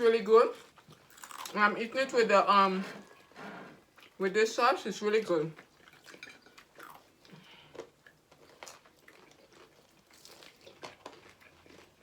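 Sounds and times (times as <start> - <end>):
person chewing crispy food: 0.6 - 1.6, 3.2 - 4.2, 5.6 - 12.0.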